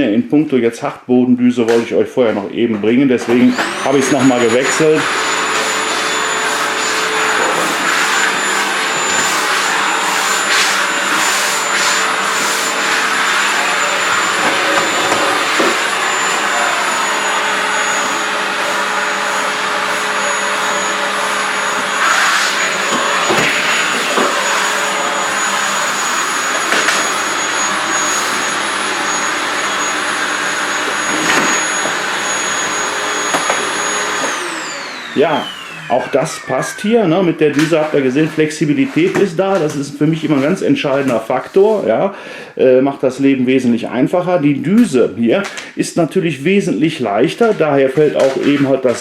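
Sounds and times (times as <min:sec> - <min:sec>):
vacuum cleaner running: 0:02.8 - 0:42.6, 0:46.6 - 0:49.0.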